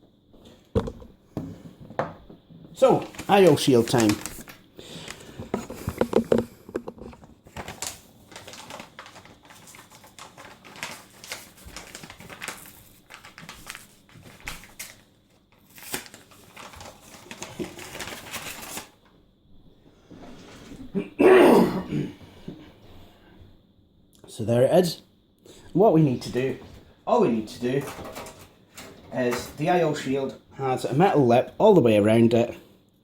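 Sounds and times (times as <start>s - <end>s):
sheet metal clicking and rattling: 27.8s - 29.6s.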